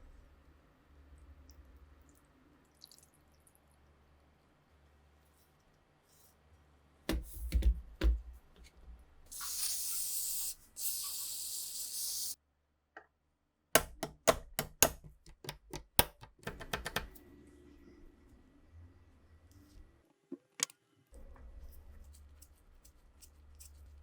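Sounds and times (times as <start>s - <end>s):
aerosol spray can hissing: 9.3s - 12.4s
sharp clicks and taps: 13.8s - 17.2s.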